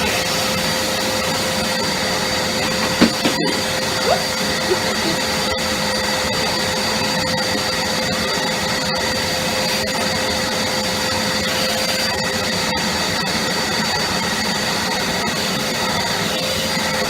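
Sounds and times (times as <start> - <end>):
vacuum cleaner running: 0.0 - 13.2.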